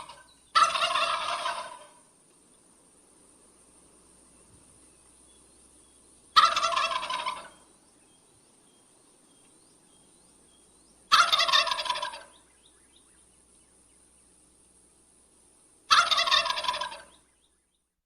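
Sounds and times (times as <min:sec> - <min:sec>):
wild turkey gobbling: 0:00.0 - 0:02.2, 0:06.3 - 0:07.7, 0:10.9 - 0:13.3, 0:15.8 - 0:17.3.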